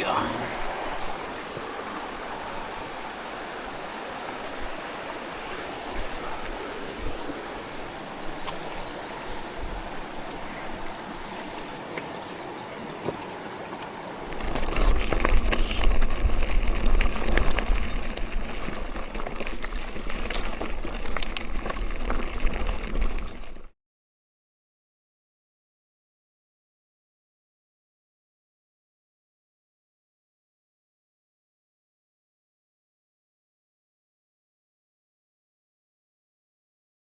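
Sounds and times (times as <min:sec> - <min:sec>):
water rushing at waterfall: 0:00.0 - 0:16.4.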